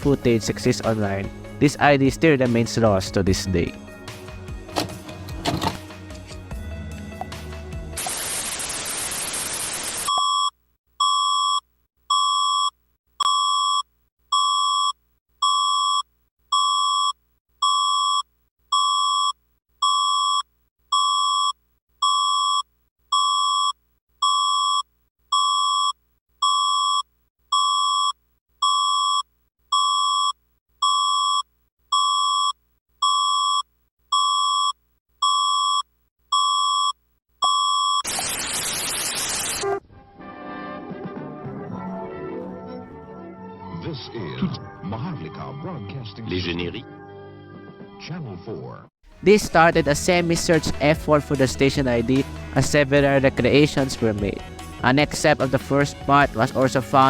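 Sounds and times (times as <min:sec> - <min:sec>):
static hiss: 0:08.0 - 0:10.1, 0:38.1 - 0:39.8
electronic beep: 0:10.0 - 0:11.4.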